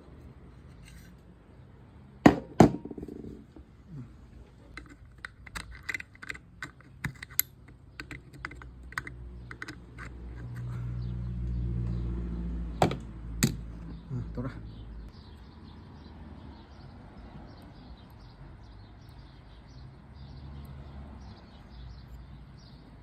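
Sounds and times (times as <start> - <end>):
sharp knocks: 2.3 - 3.4, 12.8 - 13.6
small parts and tools clicking: 4.7 - 10.9.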